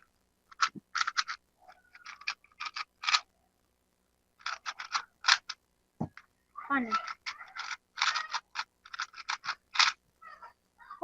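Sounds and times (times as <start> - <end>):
plastic puzzle cube clicking: 0.5 - 3.3, 4.4 - 5.6, 6.9 - 10.0.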